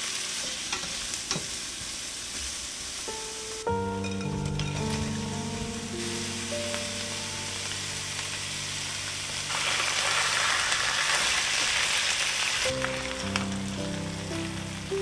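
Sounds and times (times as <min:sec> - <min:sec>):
food sizzling in oil: 0:00.0 - 0:15.0
background music: 0:03.1 - 0:11.1, 0:12.7 - 0:15.0.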